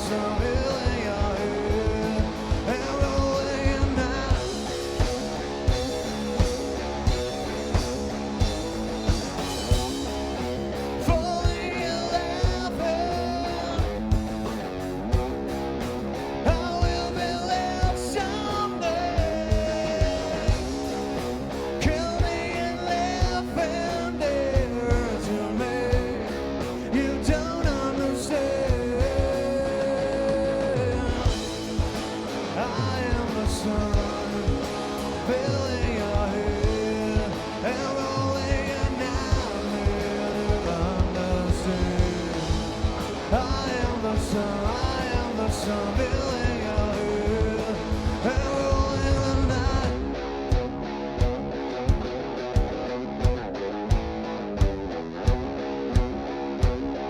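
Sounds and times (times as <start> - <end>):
person singing: 0.0 - 4.7, 11.1 - 14.0, 16.5 - 20.9, 21.8 - 31.6, 32.4 - 50.2
drums hitting: 0.0 - 57.0
electric guitar: 0.0 - 57.0
live rock band: 0.0 - 57.0.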